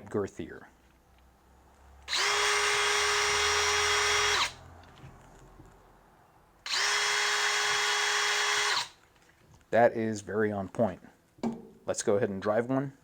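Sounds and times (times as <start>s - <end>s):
drill whining at full speed: 2.1s - 4.6s, 6.6s - 9.0s.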